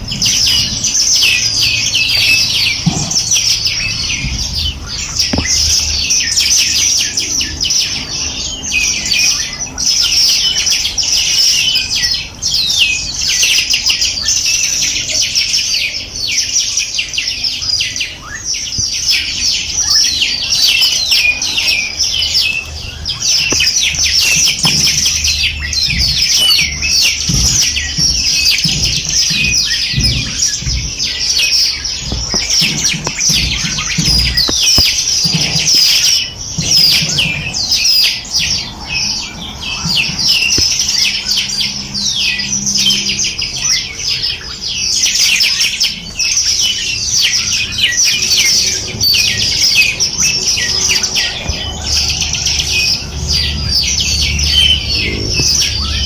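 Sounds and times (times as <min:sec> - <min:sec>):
small birds chirping: 0:00.0 - 0:56.0
low thuds: 0:02.1 - 0:06.2, 0:22.1 - 0:37.8.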